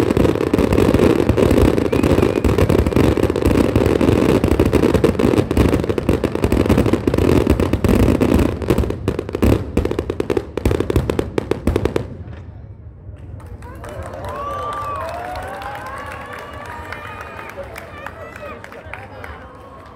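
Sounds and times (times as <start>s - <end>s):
fireworks crackling: 0.0s - 12.6s.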